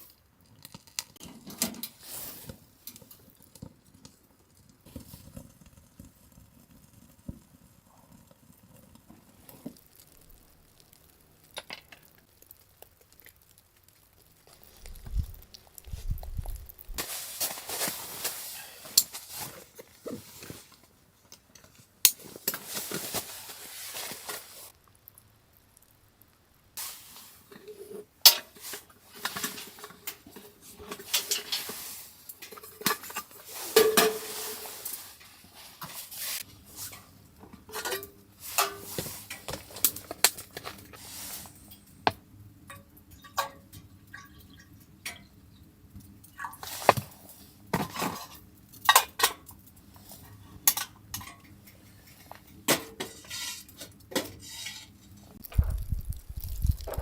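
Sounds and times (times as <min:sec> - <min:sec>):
cookware and utensils clinking: 0:26.8 - 0:36.0, 0:36.8 - 0:42.1, 0:42.7 - 0:45.3, 0:47.8 - 0:49.6.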